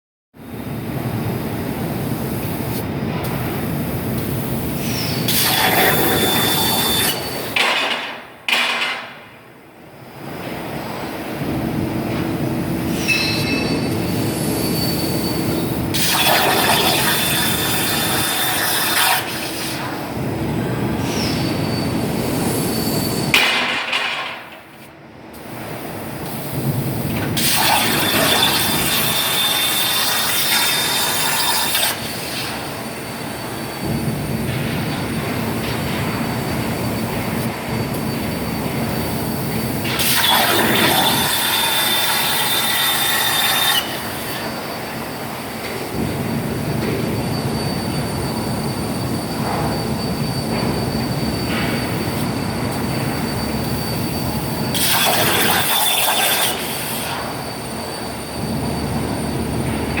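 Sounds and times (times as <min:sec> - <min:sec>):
plasma torch cutting metal: 0:04.8 - 0:07.6, 0:15.7 - 0:20.1, 0:27.3 - 0:32.6, 0:39.8 - 0:44.7, 0:54.7 - 0:57.6.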